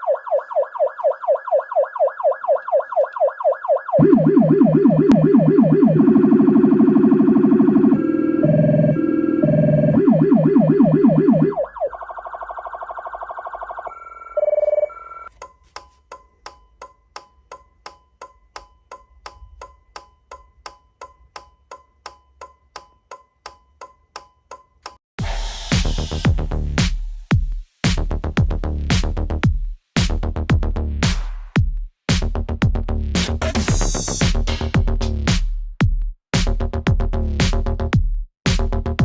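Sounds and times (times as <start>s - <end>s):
higher siren tones: 0.0s - 15.3s
low-frequency siren: 0.0s - 15.3s.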